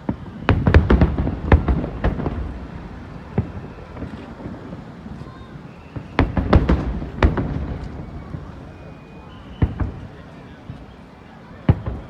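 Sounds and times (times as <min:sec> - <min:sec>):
fireworks bangs: 0:00.0 - 0:12.0.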